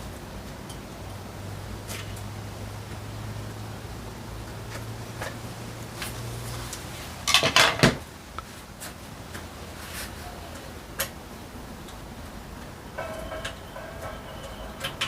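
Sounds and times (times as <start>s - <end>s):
low steady hum: 0.0s - 15.0s
hard objects clattering: 13.0s - 15.0s.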